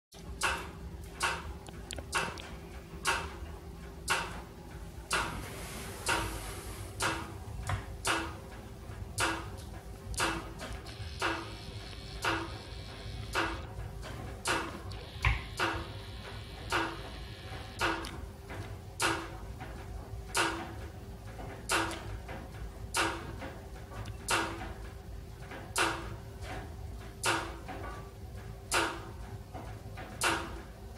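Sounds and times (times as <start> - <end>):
wood stove clicking: 0.2 - 12.7, 13.3 - 17.1
faint steady hum: 0.2 - 29.7
wood stove whoosh: 5.3 - 7.2.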